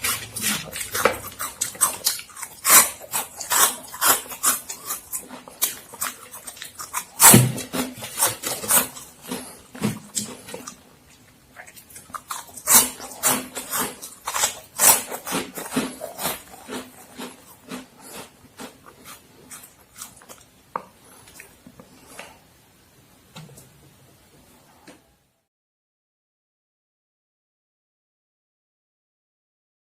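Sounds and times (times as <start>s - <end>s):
crunchy chewing of snack: 0.0s - 22.4s.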